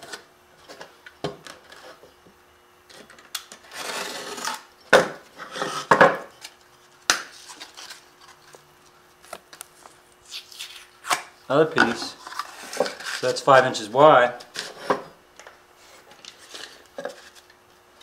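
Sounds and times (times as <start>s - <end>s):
drywall scraping: 3.6s - 4.7s, 5.4s - 6.0s.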